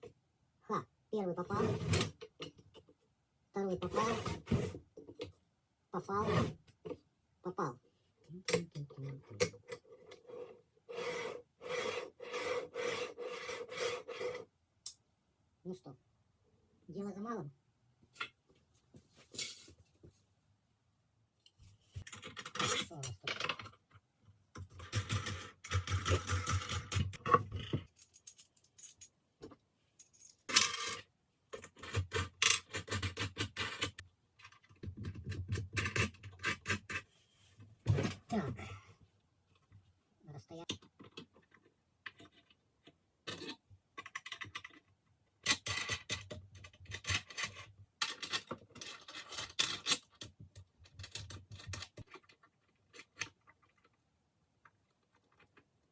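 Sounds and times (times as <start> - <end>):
hand tool scraping wood: 3.8 - 4.8, 6.2 - 6.6, 9.8 - 14.5
small metal parts clinking: 27.9 - 29.1, 45.5 - 53.9.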